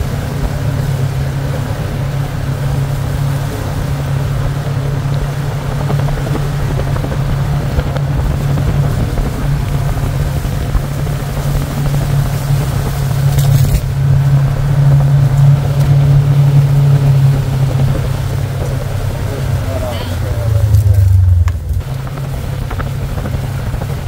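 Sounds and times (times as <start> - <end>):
vehicle engine droning: 0.0 - 24.0.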